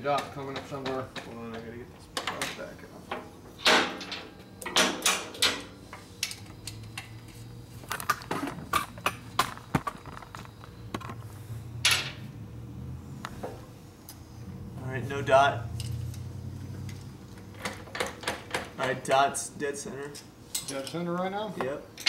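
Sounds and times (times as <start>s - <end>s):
metal tools clinking and clanking: 20.0s - 21.1s.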